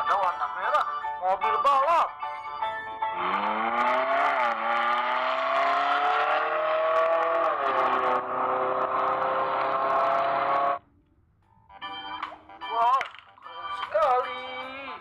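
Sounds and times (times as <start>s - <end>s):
race car engine revving: 3.1s - 10.8s.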